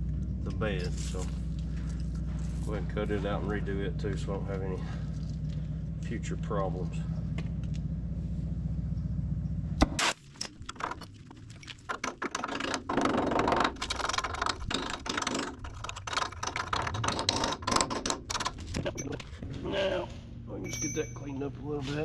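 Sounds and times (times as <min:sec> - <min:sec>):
machine hum: 0:00.0 - 0:10.0
crackling and sputtering of metal cutting: 0:09.7 - 0:19.9.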